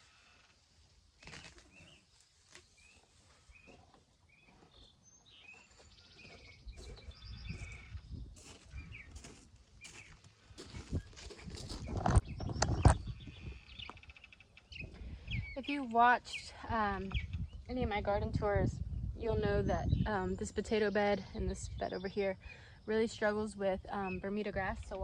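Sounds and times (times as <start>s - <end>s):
small birds chirping: 1.2s - 25.0s.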